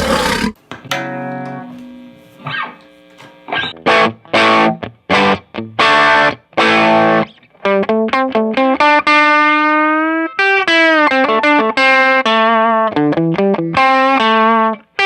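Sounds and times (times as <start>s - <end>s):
electric guitar chords and notes: 3.5s - 15.0s.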